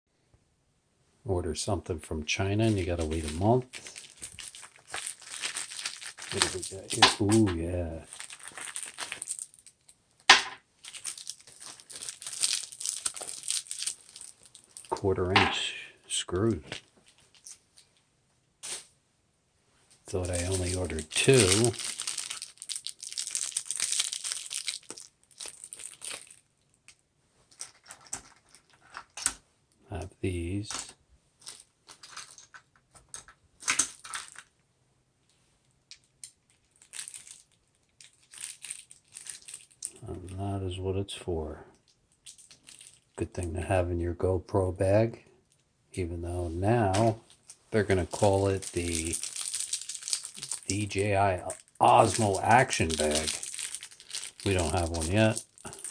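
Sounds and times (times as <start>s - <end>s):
packaging crinkling and tearing: 2.6s - 17.9s, 20.1s - 29.4s, 31.4s - 32.8s, 33.6s - 34.5s, 35.9s - 40.4s, 41.8s - 43.2s, 46.6s - 55.9s
sharp crack: 6.3s - 7.9s.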